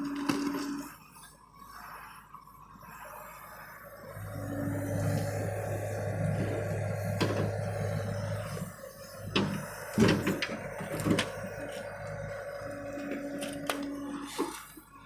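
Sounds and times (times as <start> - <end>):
machine engine humming: 4.1 - 15.0.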